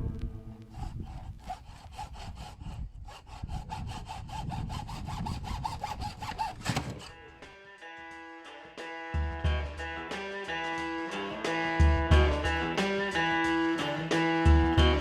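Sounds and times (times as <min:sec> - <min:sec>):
hand saw cutting plastic pipe: 0:00.6 - 0:07.2.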